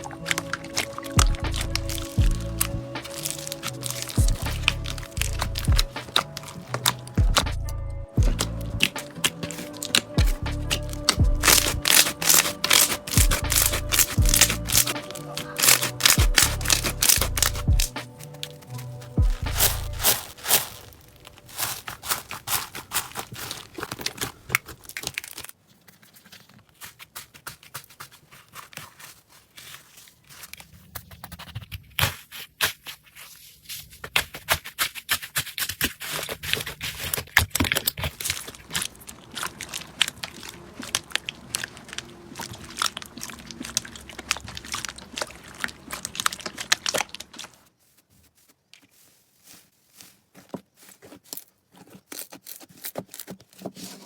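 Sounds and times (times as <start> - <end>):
slime crackling clicks: 0.0 - 7.6.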